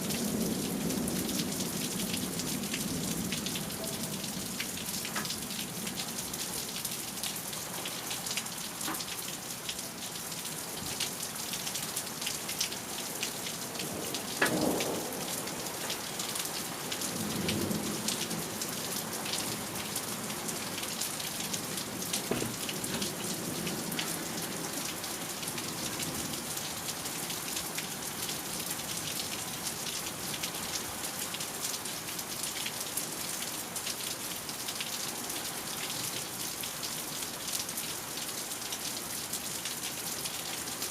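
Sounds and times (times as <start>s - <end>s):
steady rain: 0.0s - 40.9s
thunder crack and rumble: 14.4s - 15.3s.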